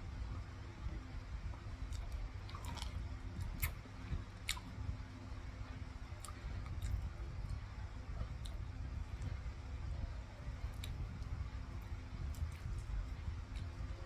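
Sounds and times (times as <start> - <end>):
chewing and wet mouth sounds: 1.9 - 4.8, 6.2 - 7.6, 8.2 - 9.4, 10.6 - 14.0.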